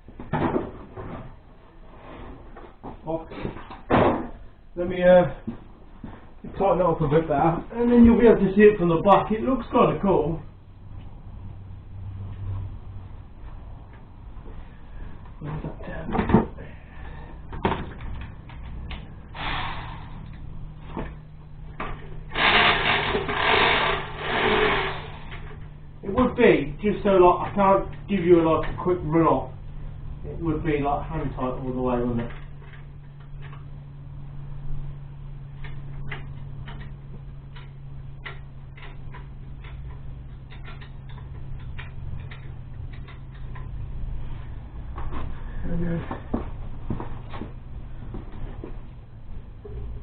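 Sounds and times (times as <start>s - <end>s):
steady low hum: 0.0s - 50.0s
rasping bursts of hand tool: 22.3s - 25.4s
sharp metal clicks: 35.6s - 43.9s.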